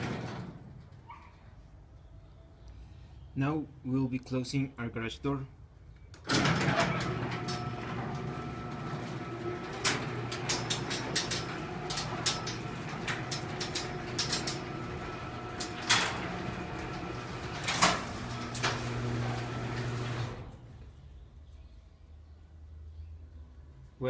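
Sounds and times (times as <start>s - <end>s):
garage door motor hum: 0.0s - 0.9s, 6.2s - 20.8s.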